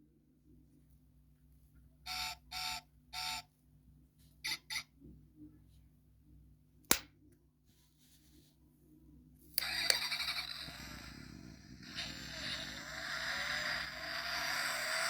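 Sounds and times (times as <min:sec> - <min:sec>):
toy car electronic beeps: 0:02.1 - 0:03.4, 0:09.6 - 0:15.0.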